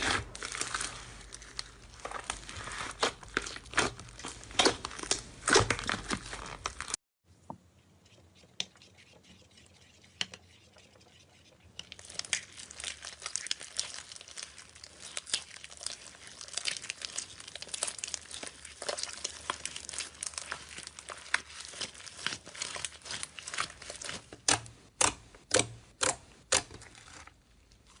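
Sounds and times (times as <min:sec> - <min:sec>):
slime squeezed crackling: 0:00.0 - 0:07.0, 0:11.8 - 0:25.1.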